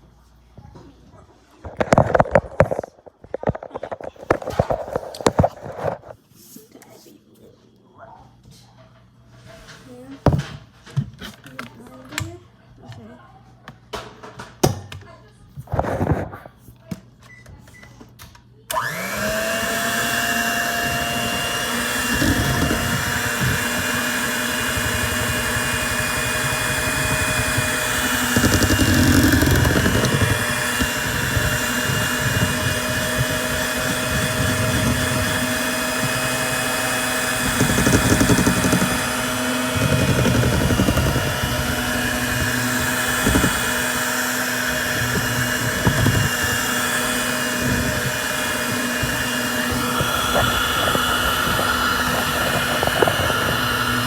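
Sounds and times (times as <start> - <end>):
electric kitchen mixer running: 18.7 - 54.0.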